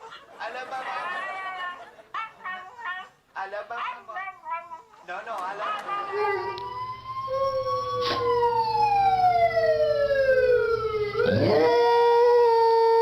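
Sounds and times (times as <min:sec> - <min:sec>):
dogs howling: 0:05.6 - 0:13.0.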